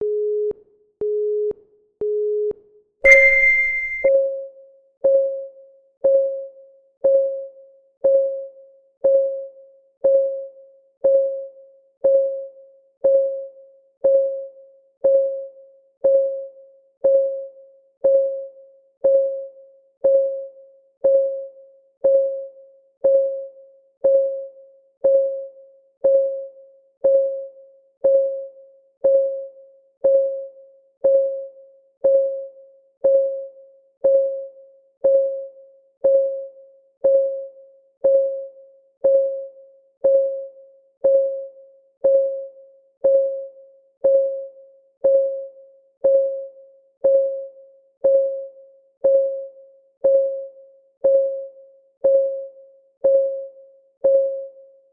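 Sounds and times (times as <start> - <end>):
higher electronic beep: 3.1 - 4.1
short low beeps: 3.1 - 4.1.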